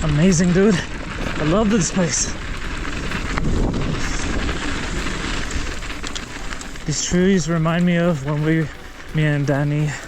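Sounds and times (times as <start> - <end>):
bike tyres rumbling on dirt: 0.0 - 10.0
small clicks and rattles: 0.1 - 10.0
wind on microphone: 1.1 - 6.9.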